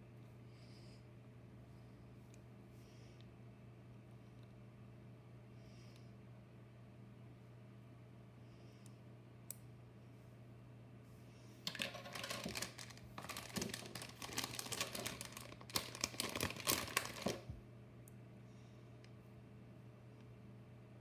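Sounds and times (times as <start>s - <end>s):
plastic rustling: 11.7s - 17.6s.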